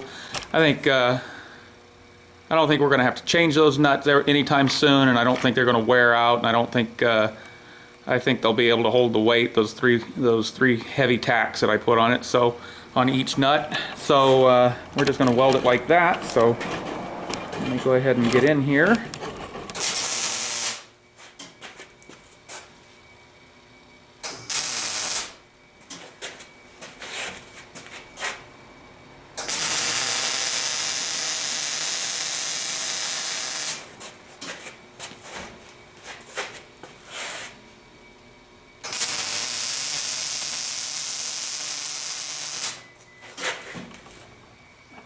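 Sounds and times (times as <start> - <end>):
arc welding sizzle: 17.3 - 21.0, 24.2 - 26.2, 29.4 - 34.0, 38.8 - 42.8.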